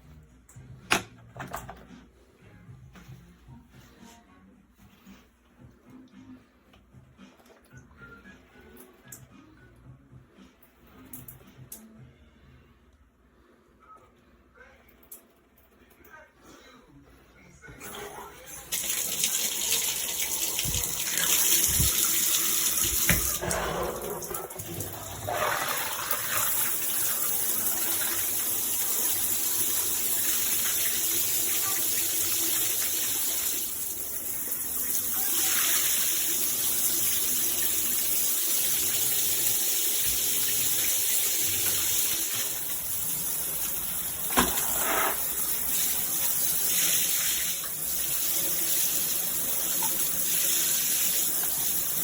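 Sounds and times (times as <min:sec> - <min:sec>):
shower spraying water: 0:18.6 - 0:52.0.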